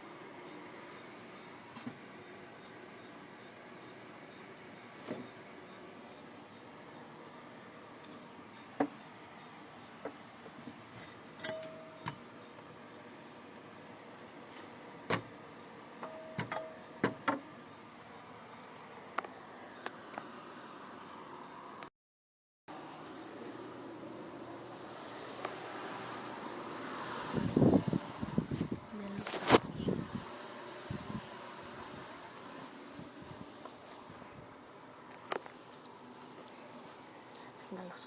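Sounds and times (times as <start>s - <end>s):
cricket trilling: 0.0s - 21.9s, 22.7s - 38.0s
scattered clicks and knocks: 16.0s - 17.5s.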